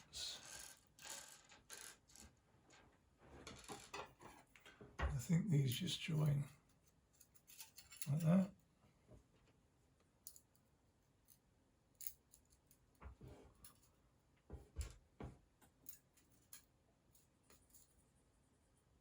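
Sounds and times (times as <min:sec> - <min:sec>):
light clicks of metal parts: 0:07.2 - 0:08.4.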